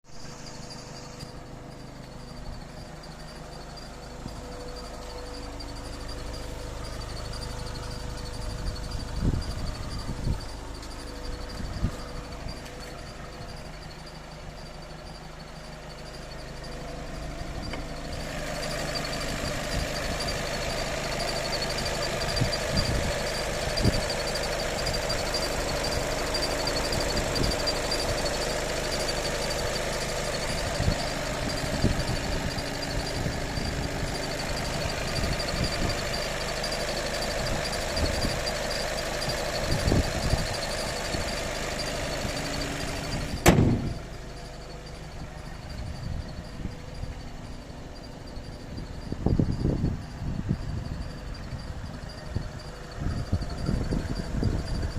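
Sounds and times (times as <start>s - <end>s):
thin high whine: 0.1s - 20.8s
car mechanical running sound: 0.1s - 54.9s
sharp click: 43.3s - 44.0s
dull knocks: 43.4s - 44.0s.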